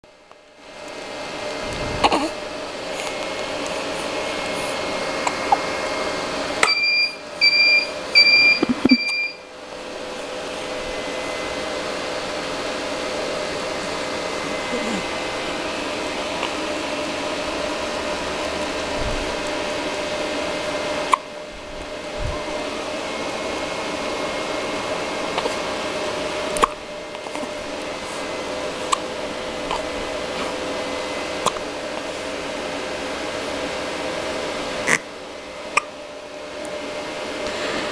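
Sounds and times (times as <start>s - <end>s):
room hum: 0.0s - 37.9s
person hiccuping: 2.0s - 2.4s
short electronic beeps: 6.6s - 9.4s.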